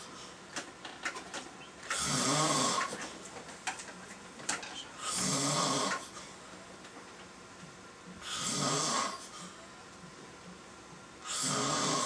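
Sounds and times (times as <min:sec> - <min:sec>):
man snoring: 0:01.9 - 0:02.9, 0:05.0 - 0:06.0, 0:08.2 - 0:09.3, 0:11.2 - 0:12.0.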